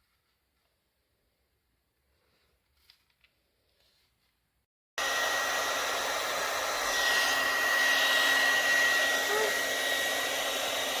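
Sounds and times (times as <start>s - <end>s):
hair dryer running: 5.0s - 11.0s.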